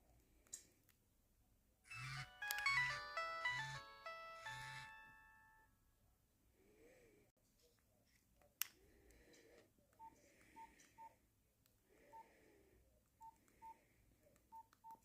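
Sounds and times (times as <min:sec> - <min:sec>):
phone ringtone melody: 0:01.9 - 0:05.8
phone keypad click: 0:02.0 - 0:02.9.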